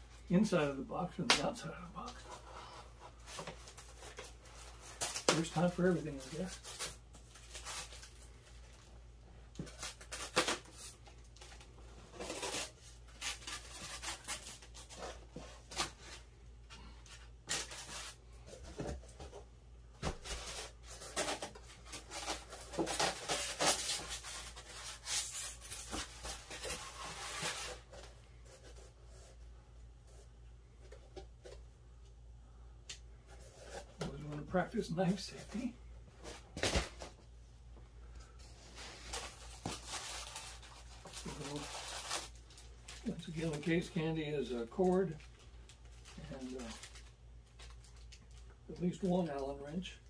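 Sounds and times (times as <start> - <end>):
packing material scraping and tearing: 20.4 - 27.8, 38.8 - 42.4.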